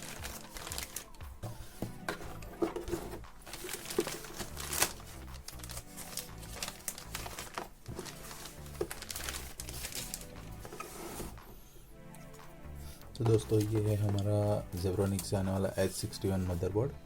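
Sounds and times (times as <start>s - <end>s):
plastic packaging crinkling: 0.0s - 1.2s, 2.6s - 10.8s.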